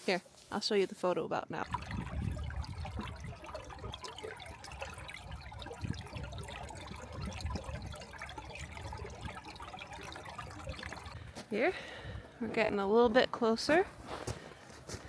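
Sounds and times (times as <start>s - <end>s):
water rushing and splashing: 1.6s - 11.7s.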